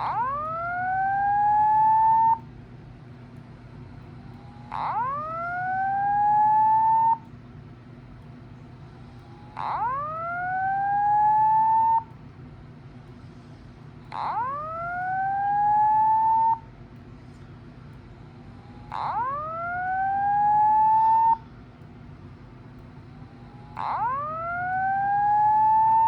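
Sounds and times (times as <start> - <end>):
fire alarm whoop tone: 0.0 - 2.5, 4.3 - 7.3, 9.0 - 12.2, 14.1 - 16.8, 18.5 - 21.5, 23.0 - 26.0.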